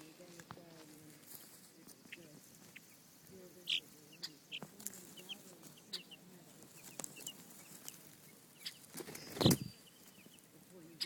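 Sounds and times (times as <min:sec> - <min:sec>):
baby chicks peeping: 0:00.0 - 0:11.0.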